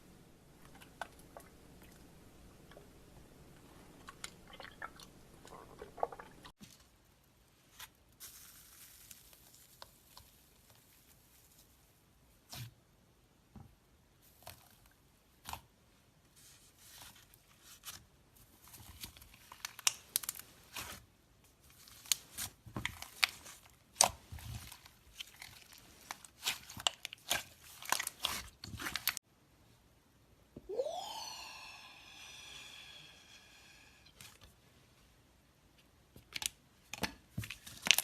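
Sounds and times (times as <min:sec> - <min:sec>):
slime crackling and popping: 0:21.9 - 0:29.2.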